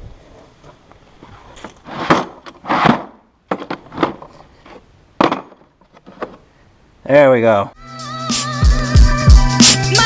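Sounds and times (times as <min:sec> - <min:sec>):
metal parts clinking and rattling: 0:01.5 - 0:06.4.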